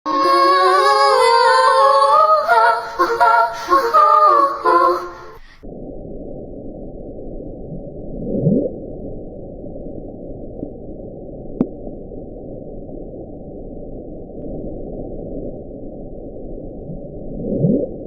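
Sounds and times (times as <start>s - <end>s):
low moan rising in pitch: 0.1s - 5.4s
high wavering singing: 0.1s - 5.6s.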